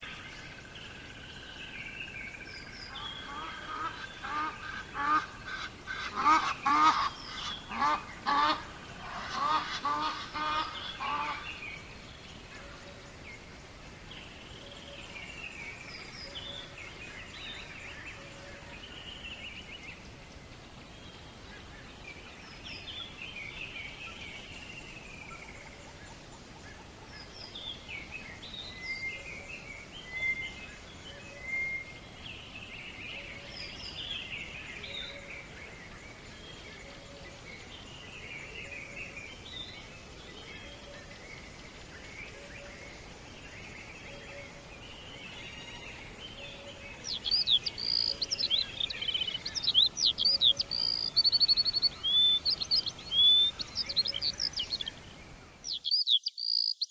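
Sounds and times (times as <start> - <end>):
background hiss: 0.0 - 56.9
jungle birds calling: 0.0 - 56.9
songbird twittering: 20.8 - 56.9.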